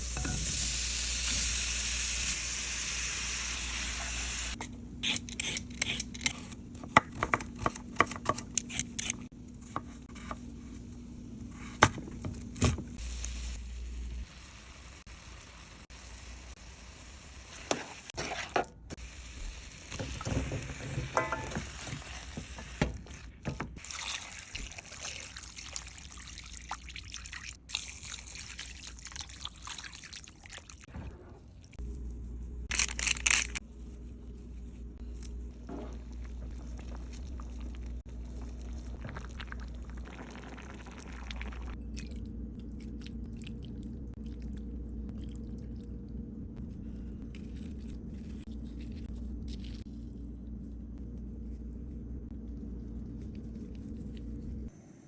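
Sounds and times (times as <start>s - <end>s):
steady hiss of cooking: 0.0s - 4.6s, 13.0s - 23.1s
stirring in a pot: 20.0s - 26.4s
utensils knocking against cookware: 20.2s - 22.0s
liquid pouring: 23.8s - 30.8s.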